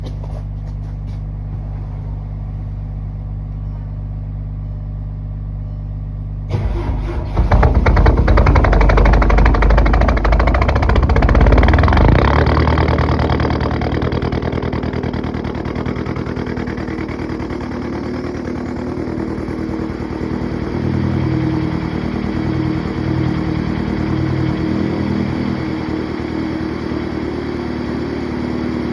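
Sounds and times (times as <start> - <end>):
low hum: 0.0 - 28.9
starter cranking: 6.5 - 26.6
diesel engine idling: 6.5 - 28.9.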